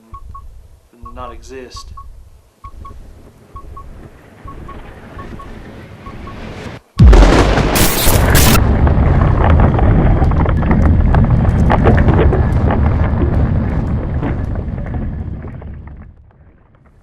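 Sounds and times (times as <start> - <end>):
rumble with crackling: 2.7 - 17.0
loud explosion: 7.0 - 16.7.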